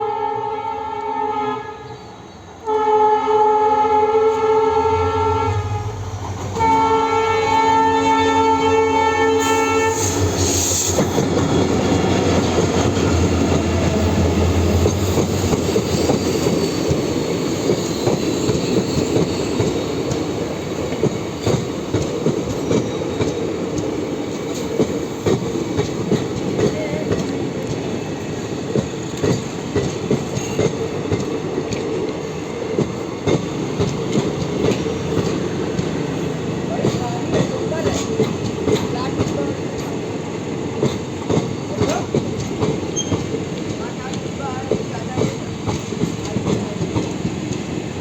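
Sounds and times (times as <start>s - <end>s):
locomotive horn: 0.0s - 2.0s, 2.6s - 10.2s
train wheels clacking over rail joints: 10.0s - 47.9s.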